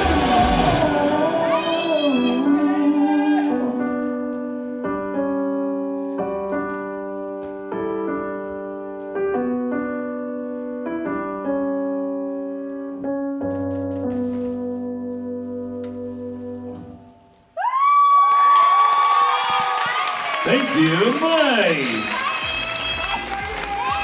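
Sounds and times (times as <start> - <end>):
slow piano chords: 0.0 - 17.6.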